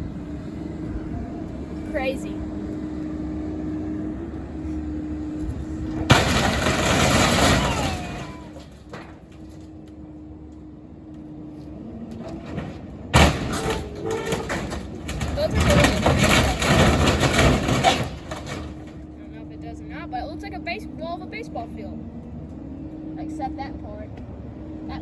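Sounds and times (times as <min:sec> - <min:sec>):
excavator engine running: 0:00.0 - 0:25.0
wood creaking: 0:05.9 - 0:09.8, 0:12.0 - 0:19.1
wood cracking and breaking: 0:06.0 - 0:09.8, 0:12.1 - 0:19.0.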